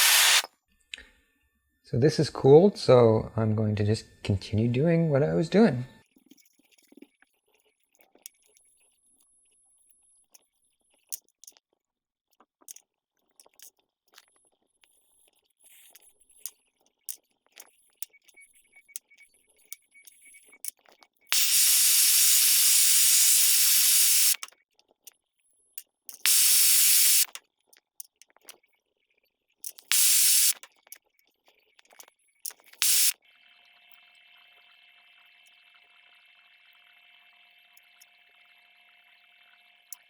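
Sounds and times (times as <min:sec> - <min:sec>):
gas torch hissing: 0:00.0 - 0:00.5, 0:21.4 - 0:24.4, 0:26.3 - 0:27.4, 0:29.9 - 0:30.6, 0:32.8 - 0:33.1
small metal pieces clicking: 0:23.2 - 0:24.6, 0:29.6 - 0:31.0.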